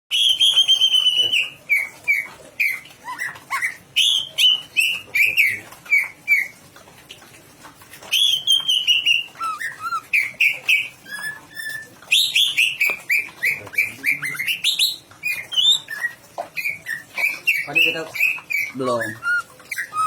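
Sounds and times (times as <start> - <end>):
bird singing whistled notes: 0.1 - 3.3, 8.1 - 20.0.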